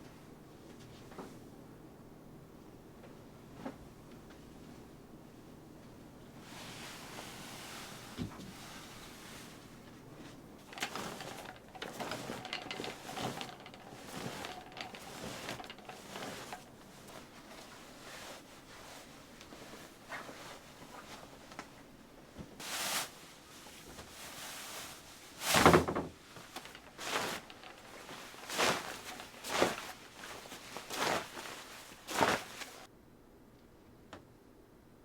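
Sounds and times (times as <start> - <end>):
light clicks and rustles: 6.7 - 22.6, 23.6 - 32.9.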